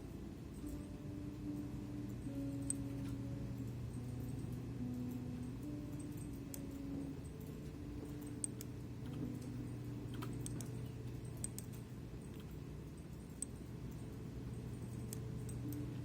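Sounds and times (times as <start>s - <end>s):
steady low hum: 0.0s - 16.0s
computer mouse clicks: 8.2s - 9.5s, 10.1s - 12.6s
computer keyboard clicks: 10.1s - 14.1s, 14.8s - 16.0s.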